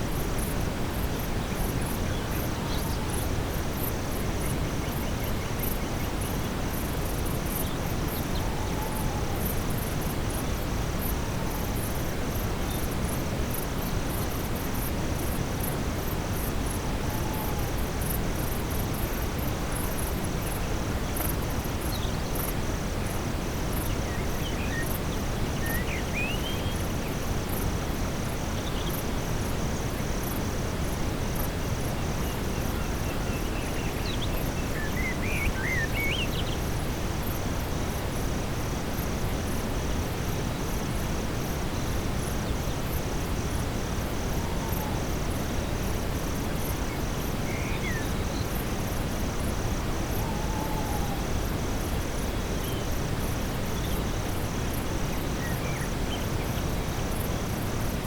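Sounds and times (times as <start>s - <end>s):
brown noise hiss: 0.0s - 58.0s
crickets and insects chirping: 0.0s - 58.0s.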